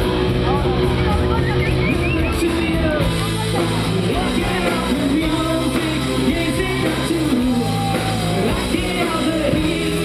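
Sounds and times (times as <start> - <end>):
rock band playing live: 0.0 - 10.0
person singing: 2.4 - 10.0.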